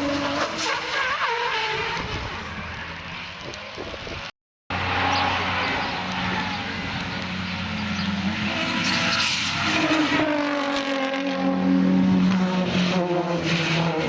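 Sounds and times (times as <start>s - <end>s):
car engine revving: 4.7s - 14.0s.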